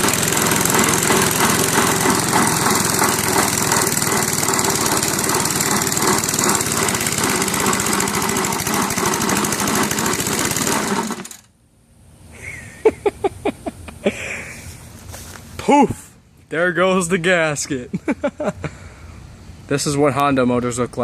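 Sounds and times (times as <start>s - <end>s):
lawnmower engine running flat out: 0.0s - 11.5s.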